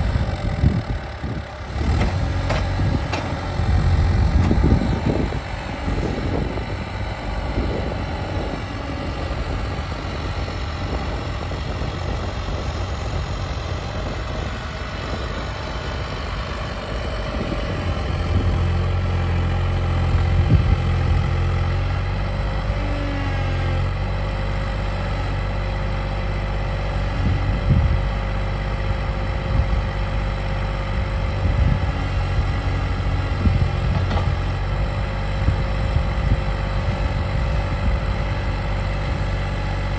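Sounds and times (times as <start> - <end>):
diesel engine running: 0.0 - 39.9
short knocks: 1.9 - 3.7.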